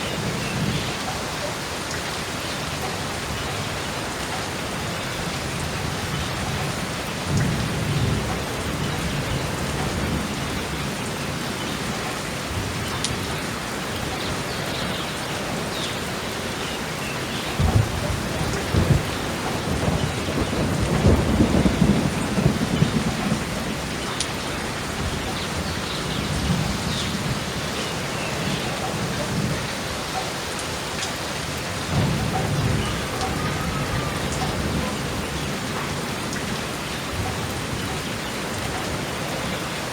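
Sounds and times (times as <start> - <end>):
steady rain: 0.0 - 39.9
thunder rumbling: 4.1 - 29.9, 31.7 - 39.9
thunder cracks: 17.5 - 27.6, 31.8 - 36.3.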